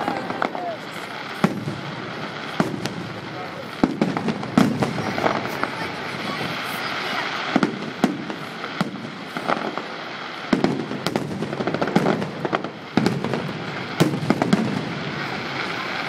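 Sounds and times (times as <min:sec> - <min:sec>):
crackling hiss: 0:00.0 - 0:16.0
fireworks bangs: 0:00.0 - 0:16.0.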